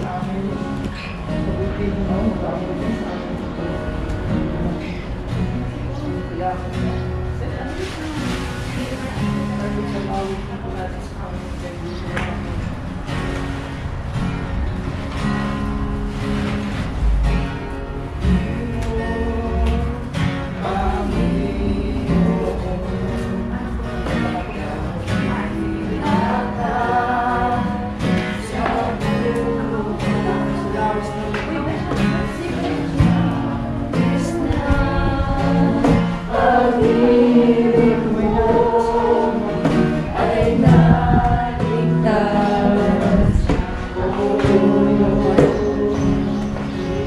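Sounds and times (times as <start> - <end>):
instrumental accompaniment: 11.9 - 47.0
group singing worship song: 18.2 - 47.0.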